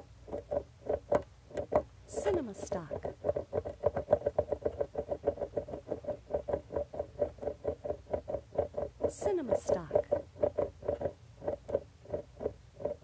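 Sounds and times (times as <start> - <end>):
mug rolling and clattering on table: 3.0 - 9.1.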